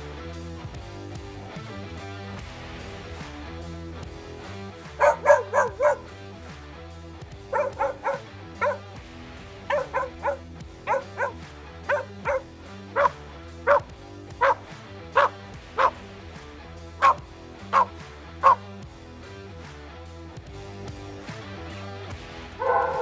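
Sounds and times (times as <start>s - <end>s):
background music: 0.0s - 23.0s
dog barking: 4.9s - 6.2s, 7.4s - 9.0s, 9.6s - 16.1s, 17.0s - 18.6s, 22.6s - 23.0s.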